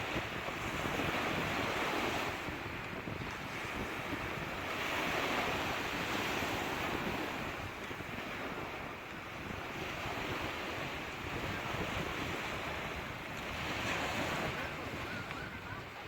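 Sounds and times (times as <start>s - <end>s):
sea waves breaking on shore: 0.0s - 16.0s.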